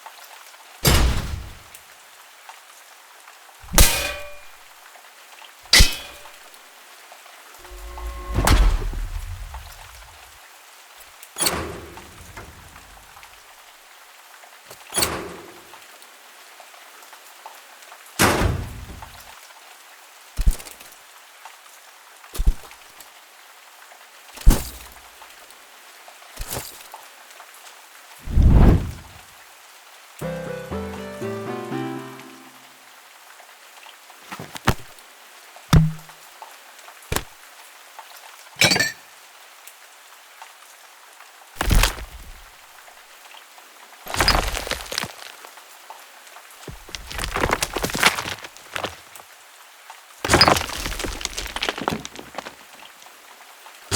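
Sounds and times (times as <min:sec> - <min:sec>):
rain-like hiss: 0:00.0 - 0:53.9
crackling breaking hit: 0:00.8 - 0:01.7, 0:07.6 - 0:10.3, 0:41.6 - 0:42.5, 0:44.1 - 0:45.5, 0:46.7 - 0:49.2, 0:50.3 - 0:52.8
impact knocks and thuds: 0:00.8 - 0:01.7, 0:28.3 - 0:29.1, 0:34.3 - 0:34.9, 0:35.7 - 0:36.1, 0:37.1 - 0:37.3, 0:41.6 - 0:42.4, 0:46.7 - 0:49.1, 0:50.3 - 0:52.6
impact hits: 0:03.7 - 0:04.5, 0:05.8 - 0:06.4, 0:07.6 - 0:10.2, 0:35.7 - 0:36.1.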